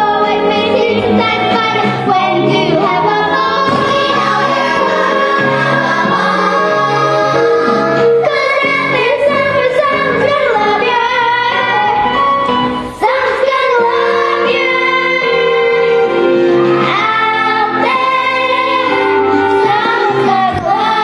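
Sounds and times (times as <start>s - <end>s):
instrumental accompaniment: 0.0s - 21.0s.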